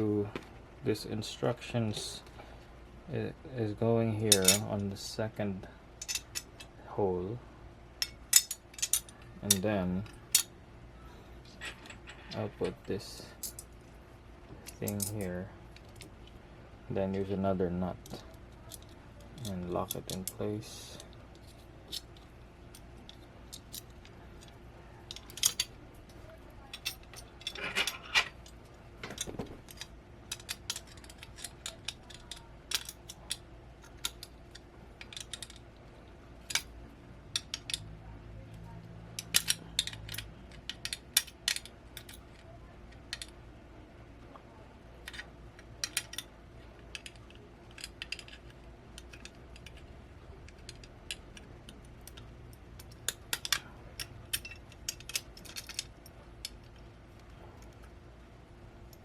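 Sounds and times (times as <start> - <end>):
metallic clicks and clinks: 4.3 - 4.8, 6.0 - 6.7, 8.0 - 10.5, 11.5 - 13.7, 18.0 - 35.8, 36.4 - 43.4, 45.0 - 57.9.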